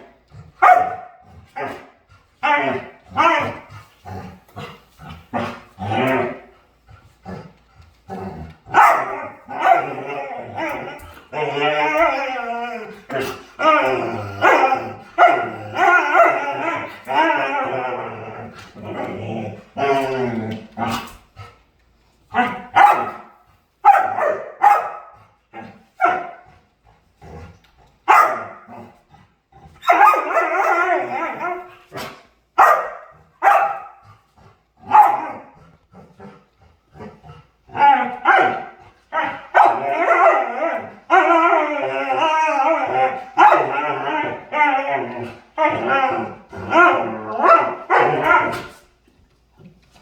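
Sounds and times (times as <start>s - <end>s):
dog barking: 0.6s - 1.9s, 8.7s - 9.9s, 22.4s - 25.2s, 26.0s - 26.4s, 28.1s - 28.7s, 29.8s - 30.8s, 32.0s - 34.0s, 34.9s - 35.5s, 38.2s - 40.6s, 43.4s - 43.7s, 47.4s - 48.7s
dog howling calls: 39.2s - 48.5s.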